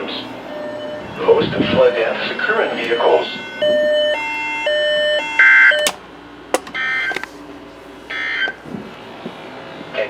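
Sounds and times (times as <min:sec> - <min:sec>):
alternating electronic beeps: 0:00.4 - 0:06.0.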